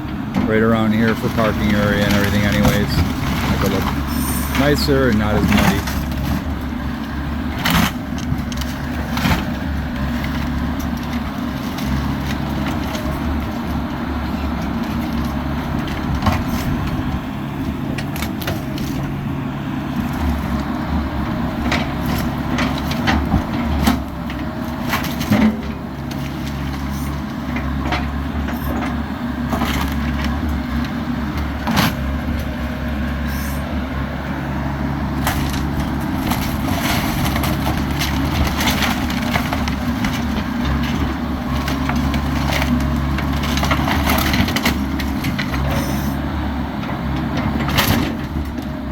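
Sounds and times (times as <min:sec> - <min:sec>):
excavator diesel engine: 0:00.0 - 0:48.9
wood cracking and splintering: 0:00.4 - 0:19.3, 0:35.1 - 0:45.7.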